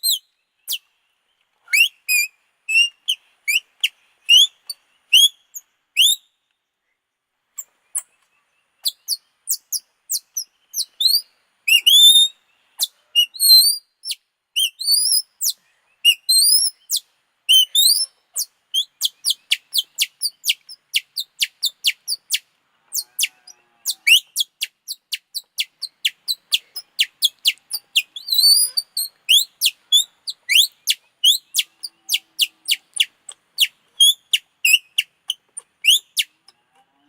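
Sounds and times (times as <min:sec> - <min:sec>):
plastic strip bird call chirps: 0:23.0 - 0:36.4.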